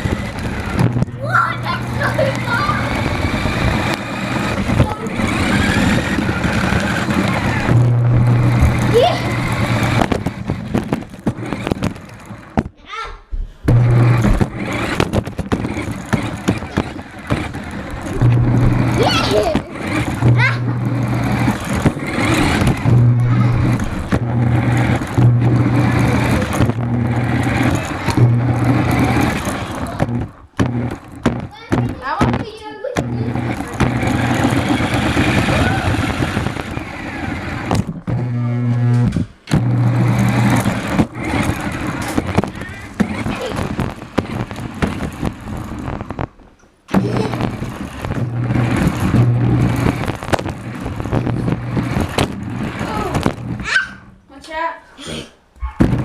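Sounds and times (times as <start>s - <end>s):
car rattling over ground: 0.0s - 12.6s, 13.8s - 38.1s, 38.8s - 53.7s
toy car motor humming: 0.0s - 12.6s, 13.7s - 46.3s, 46.9s - 54.2s
rattling with sharp knocks: 13.7s - 36.7s.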